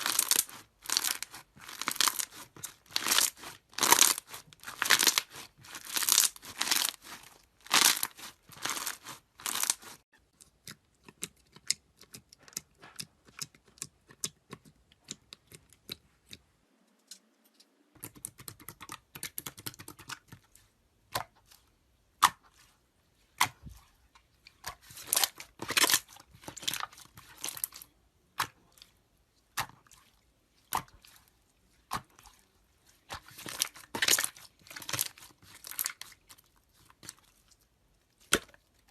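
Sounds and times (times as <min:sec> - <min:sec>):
slime crackling and popping: 0:00.0 - 0:10.0, 0:24.8 - 0:27.8, 0:33.2 - 0:36.2.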